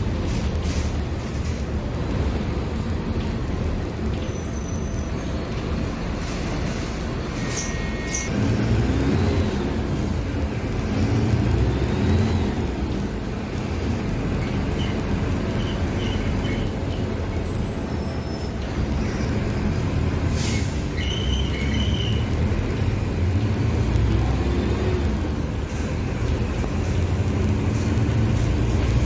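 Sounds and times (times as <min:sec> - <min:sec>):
bus diesel engine running: 0:00.0 - 0:29.0
short air hisses: 0:20.3 - 0:20.8.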